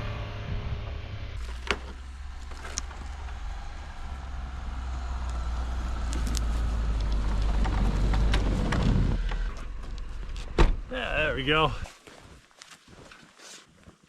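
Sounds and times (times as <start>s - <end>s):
truck engine drone: 0.0s - 10.5s
knocks and rattles: 7.0s - 10.9s.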